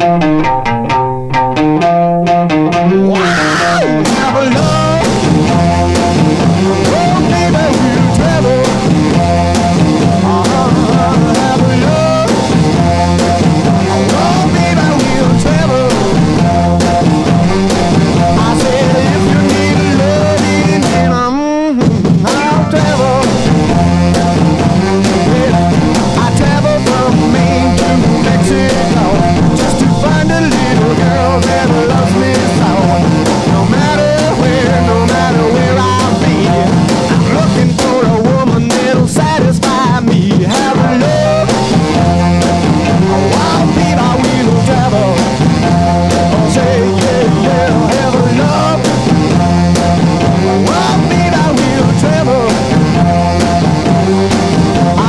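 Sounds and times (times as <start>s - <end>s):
rock music: 0.0s - 55.0s.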